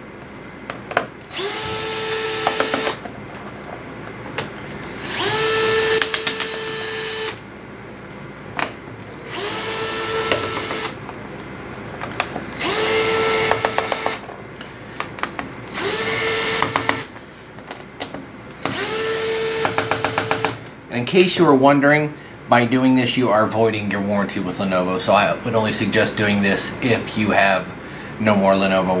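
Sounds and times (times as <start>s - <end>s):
electric screwdriver whining: 1.3s - 3.1s, 4.9s - 7.4s, 9.3s - 11.0s, 12.6s - 14.3s, 15.7s - 17.1s, 18.6s - 20.6s
screwdriver clicks: 5.2s - 7.4s.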